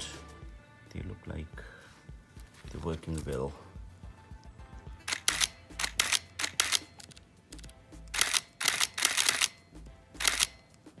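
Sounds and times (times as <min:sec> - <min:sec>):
camera shutter firing with film advance: 0:05.1 - 0:07.1.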